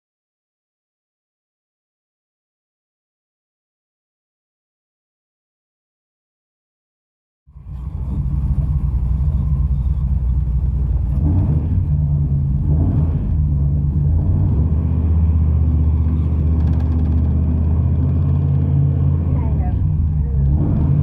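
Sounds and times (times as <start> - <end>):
pickup truck engine rumbling: 7.5 - 21.0.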